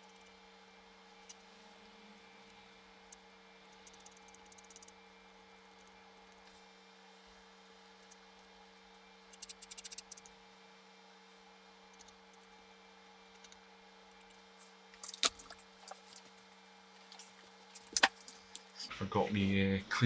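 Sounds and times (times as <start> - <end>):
small ticks: 0.0 - 0.4, 1.1 - 1.6, 2.4 - 6.6, 7.8 - 10.3, 11.9 - 12.6, 13.2 - 16.4
electrical hum: 0.0 - 20.0.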